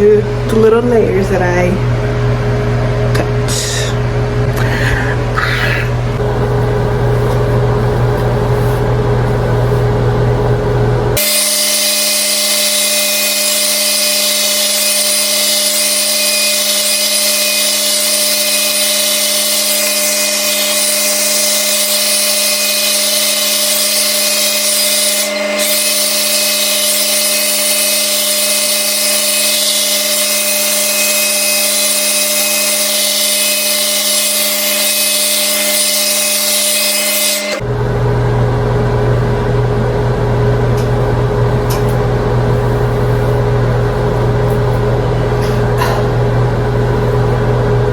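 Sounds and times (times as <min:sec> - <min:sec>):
blow dryer brush whine: 0:00.0 - 0:15.4.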